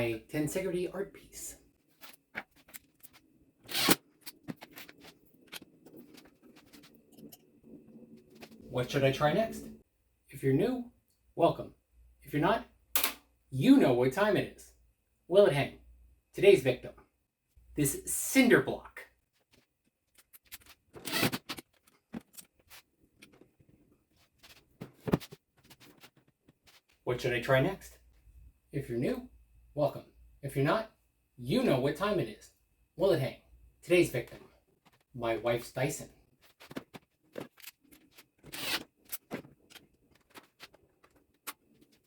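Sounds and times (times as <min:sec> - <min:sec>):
clicks and rubbing from handling: 0:36.4 - 0:42.0.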